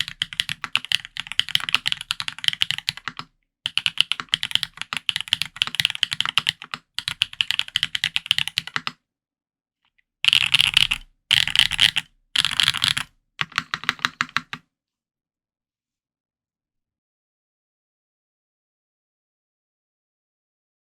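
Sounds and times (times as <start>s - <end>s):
mechanical keyboard typing: 0.0s - 9.0s, 10.3s - 14.6s.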